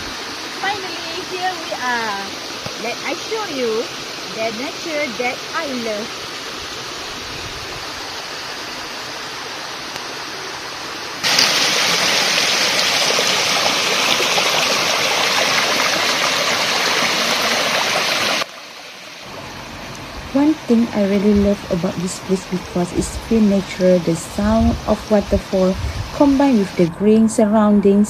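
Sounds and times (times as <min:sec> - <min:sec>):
waterfall rushing: 0:00.0 - 0:19.3.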